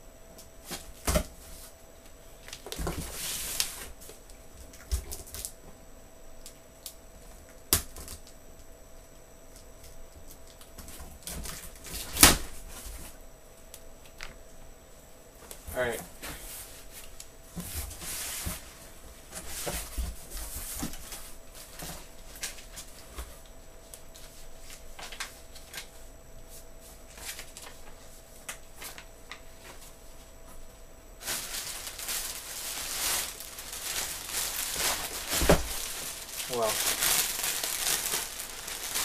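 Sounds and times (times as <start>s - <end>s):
packing material crinkling and tearing: 31.2s - 39.0s.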